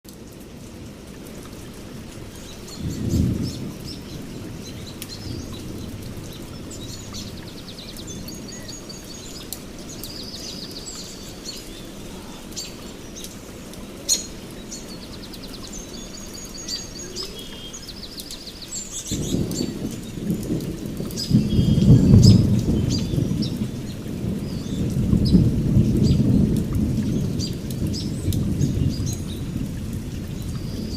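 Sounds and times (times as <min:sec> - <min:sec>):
steady rain: 0:00.0 - 0:30.9
thunder rumble: 0:01.3 - 0:10.7, 0:18.9 - 0:30.9
birds chirping: 0:01.5 - 0:29.6.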